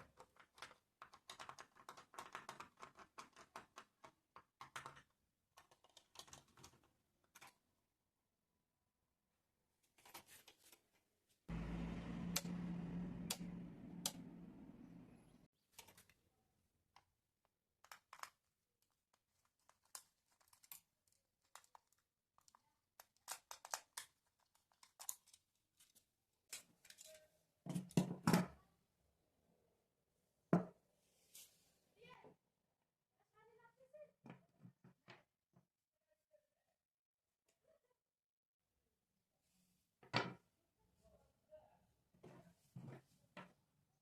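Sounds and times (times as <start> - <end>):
small parts clicking and knocking: 0.0 - 7.7, 16.9 - 28.3.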